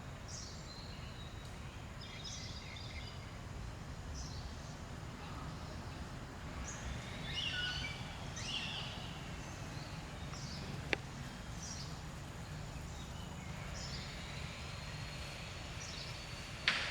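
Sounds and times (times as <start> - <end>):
birds chirping and whistling: 6.6 - 16.9.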